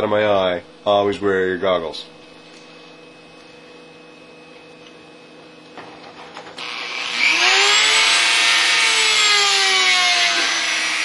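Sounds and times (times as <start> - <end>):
rotary tool whining: 6.4 - 11.0.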